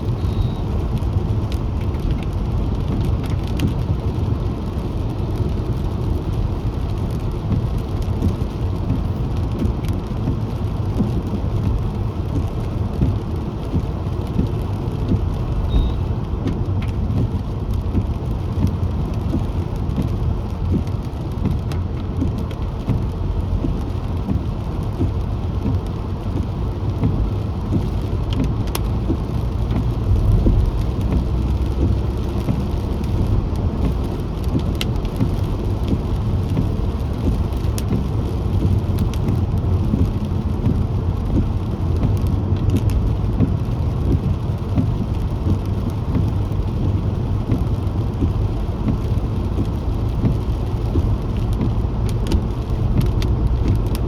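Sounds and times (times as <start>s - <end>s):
car driving on wet road: 0.0s - 54.0s
raindrops clicking: 0.1s - 54.0s.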